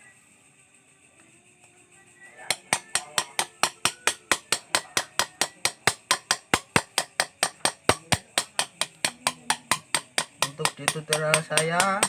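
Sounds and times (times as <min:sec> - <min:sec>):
hammer tapping chisel on metal: 0:02.5 - 0:12.0.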